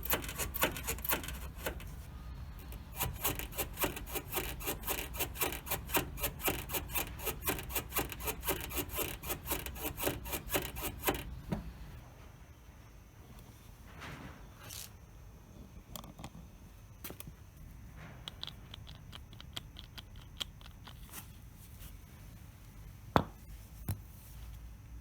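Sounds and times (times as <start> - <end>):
rhythmic rubbing squeak: 0.0 - 11.4.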